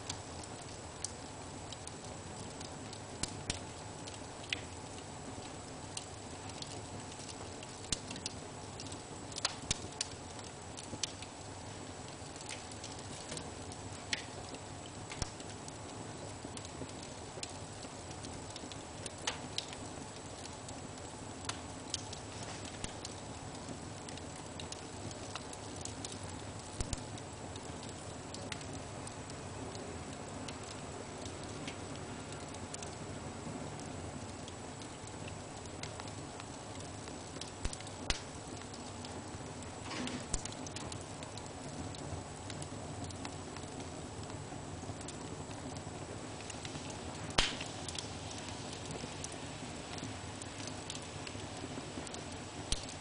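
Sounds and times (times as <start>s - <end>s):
wood fire crackling: 0.0s - 53.0s
fire hiss: 46.2s - 53.0s.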